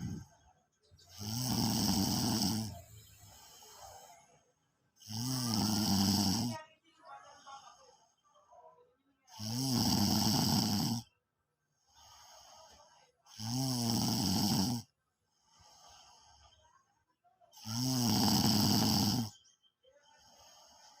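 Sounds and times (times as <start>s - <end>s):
person snoring loudly: 0.0s - 0.2s, 1.1s - 2.8s, 5.0s - 6.6s, 9.4s - 11.0s, 13.3s - 14.9s, 17.6s - 19.4s
soft breath out: 0.0s - 1.1s, 2.5s - 4.5s, 11.8s - 13.2s, 19.9s - 21.0s.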